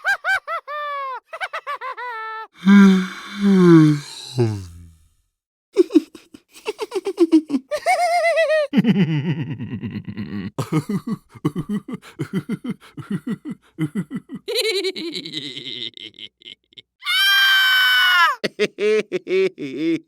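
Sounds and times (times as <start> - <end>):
cartoon rapid-fire laughter: 0.0 - 2.5, 5.8 - 8.9, 9.5 - 16.6.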